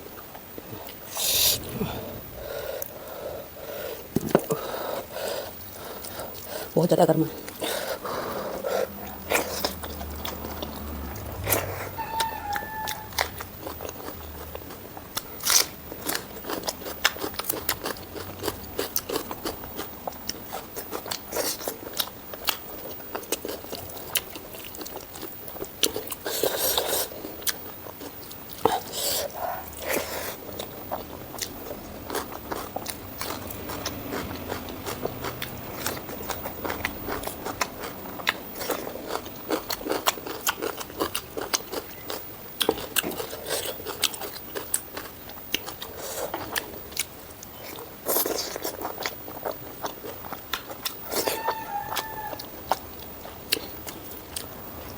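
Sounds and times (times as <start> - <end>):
wet chewing: 0.0 - 54.9
crunchy bites: 7.4 - 22.6.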